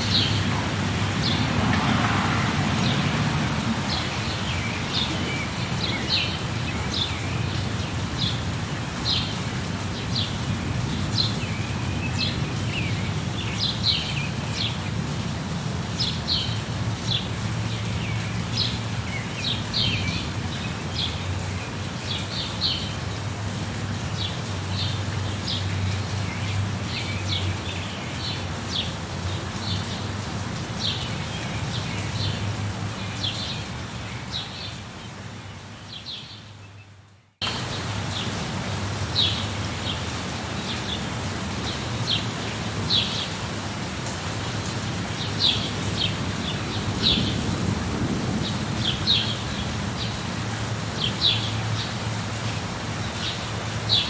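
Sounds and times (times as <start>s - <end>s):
small birds chirping: 2.5s - 10.4s.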